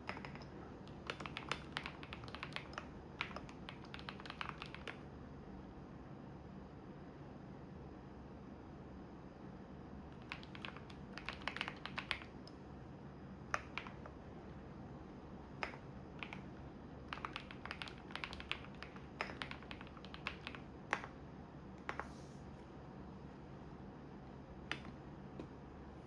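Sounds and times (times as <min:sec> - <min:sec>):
typing on computer keyboard: 0:00.0 - 0:05.0, 0:10.1 - 0:12.6, 0:13.5 - 0:14.2, 0:15.6 - 0:21.2.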